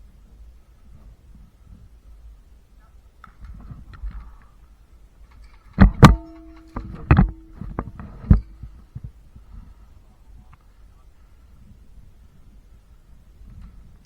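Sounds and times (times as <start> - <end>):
sharp cracks: 5.3 - 8.8
faint ringing tone: 5.8 - 9.9.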